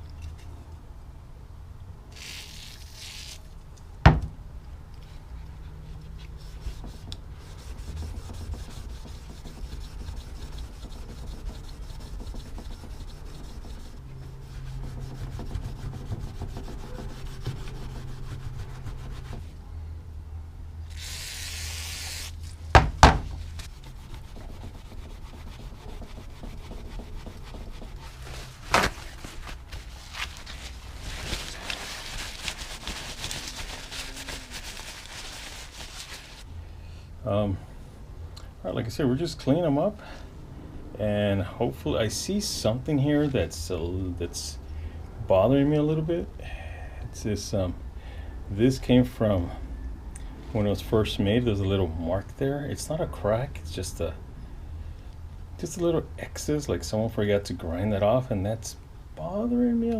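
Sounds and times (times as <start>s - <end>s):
steel wool scrubbing metal: 6.4s - 19.5s, 23.6s - 28.6s.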